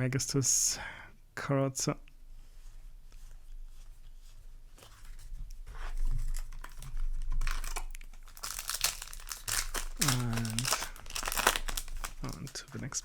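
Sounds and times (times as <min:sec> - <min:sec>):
foil wrapper crinkling and tearing: 0:06.0 - 0:13.0.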